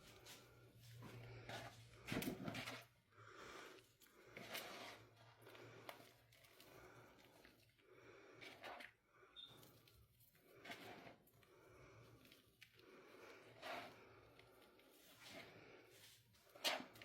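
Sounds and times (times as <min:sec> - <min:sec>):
person breathing heavily: 0:03.0 - 0:04.5, 0:05.4 - 0:09.3.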